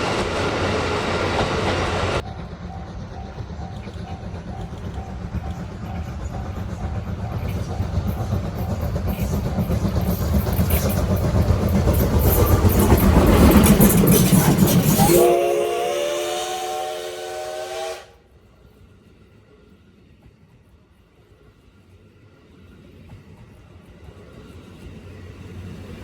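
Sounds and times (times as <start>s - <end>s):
steam locomotive rumbling past: 0.0s - 26.0s
chime steam whistle: 13.8s - 18.2s.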